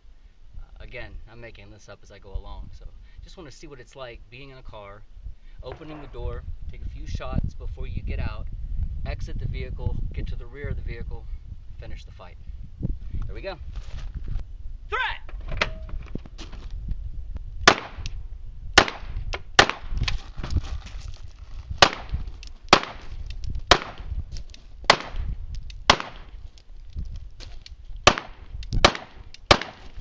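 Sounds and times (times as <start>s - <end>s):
pistol shots with echo: 22.7s - 23.1s, 23.7s - 24.1s, 25.9s - 26.3s, 28.1s - 30.0s.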